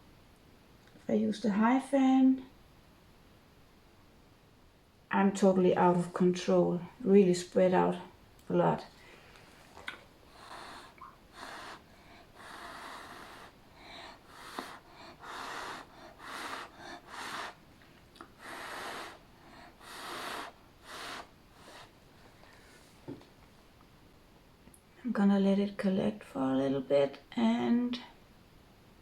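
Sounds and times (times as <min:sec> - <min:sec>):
puffs of blown air: 0:10.3 - 0:23.0.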